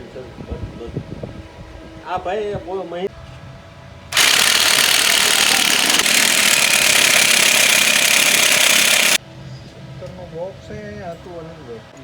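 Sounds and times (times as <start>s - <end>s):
impact wrench hammering on bolt: 4.2s - 9.2s.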